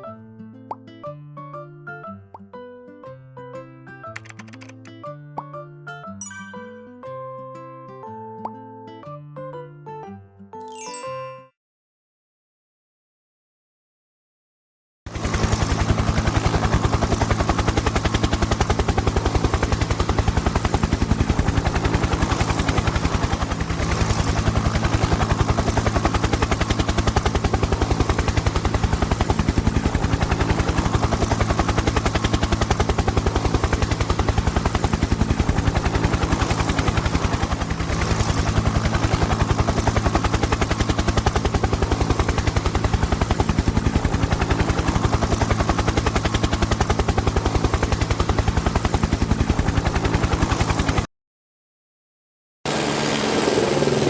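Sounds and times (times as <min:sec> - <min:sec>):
helicopter rotor blades chopping: 0:04.1 - 0:05.0, 0:15.1 - 0:51.0, 0:52.7 - 0:54.0.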